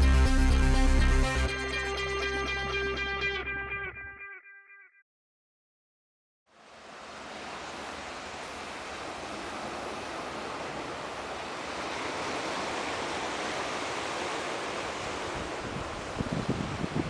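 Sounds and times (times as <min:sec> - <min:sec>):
ocean surf washing on shore: 0:06.6 - 0:17.0.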